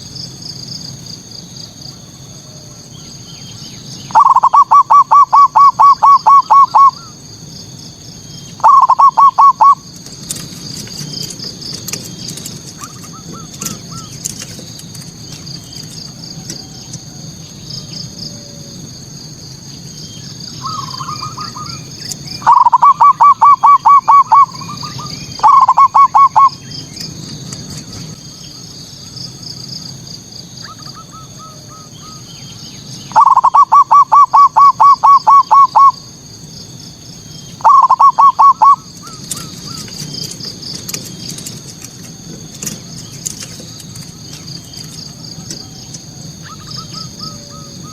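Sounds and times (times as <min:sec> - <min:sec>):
high twittering: 0:03.1 - 0:07.2, 0:08.3 - 0:09.9, 0:20.2 - 0:27.2, 0:30.6 - 0:36.1, 0:37.2 - 0:39.9
dove cooing: 0:04.1 - 0:07.2, 0:08.6 - 0:11.0, 0:20.6 - 0:28.1, 0:33.1 - 0:36.0, 0:37.6 - 0:40.2, 0:43.4 - 0:47.9.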